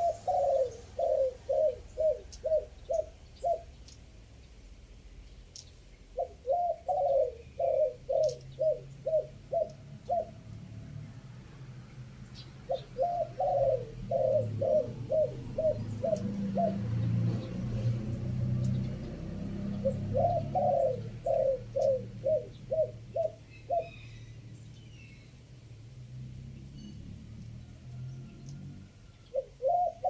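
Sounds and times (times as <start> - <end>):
dove cooing: 0.0 - 3.8, 6.1 - 10.6, 12.6 - 24.4, 28.4 - 30.0.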